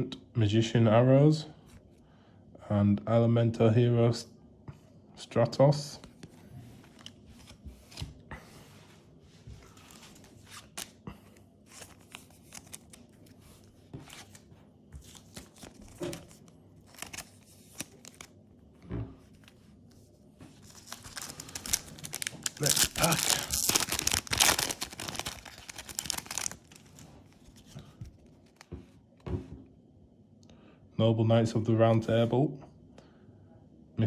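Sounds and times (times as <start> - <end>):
cards rustling and tapping: 9.5 - 18.3, 20.4 - 28.9
foil wrapper crinkling: 15.1 - 18.3, 20.6 - 28.7.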